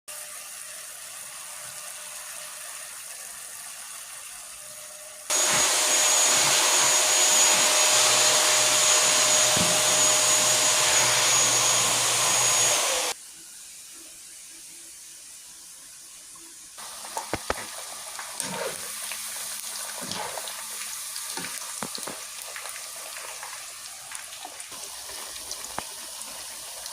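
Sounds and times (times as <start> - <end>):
electric motor whining: 5.3 - 13.2.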